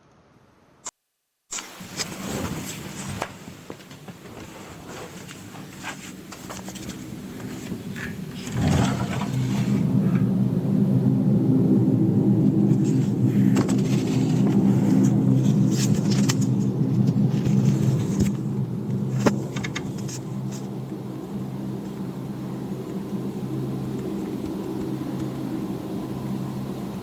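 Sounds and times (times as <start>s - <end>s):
deep droning hum in sky: 5.4s - 27.0s.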